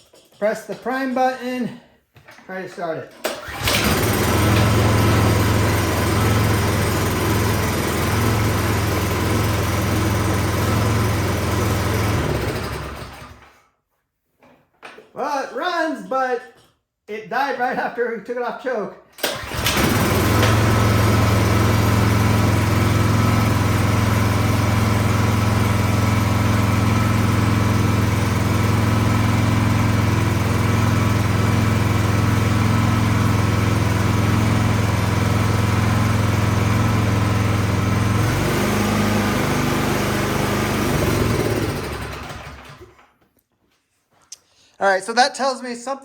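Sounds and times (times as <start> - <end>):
small engine running and stalling: 3.2 - 13.6, 19.2 - 43.1.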